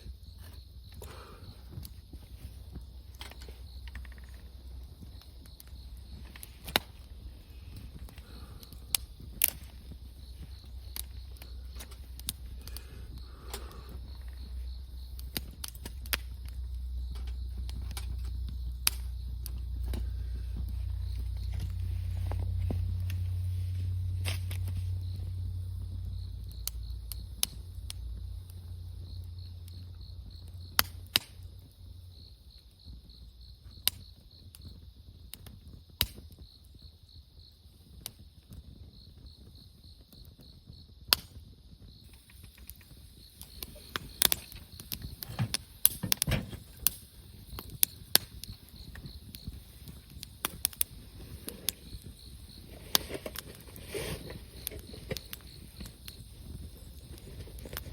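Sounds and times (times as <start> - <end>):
campfire crackling: 0.0 - 57.9
insects chirping: 0.0 - 57.9
low rumble: 7.0 - 30.6.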